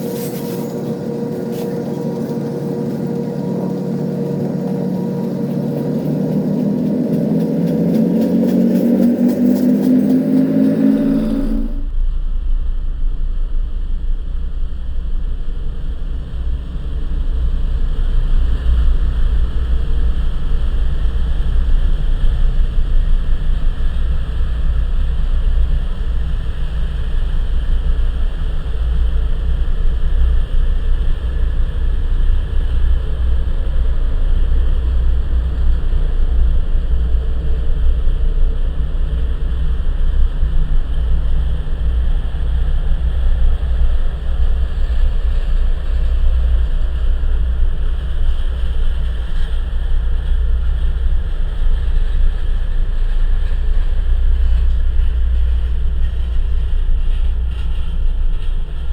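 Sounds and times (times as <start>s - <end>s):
freight train cars rumbling past: 0.0s - 11.9s.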